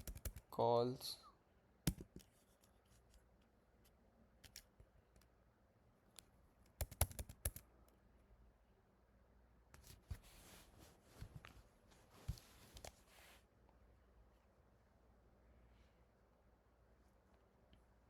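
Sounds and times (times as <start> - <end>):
computer keyboard keystrokes: 0.0 - 0.5, 6.7 - 7.6.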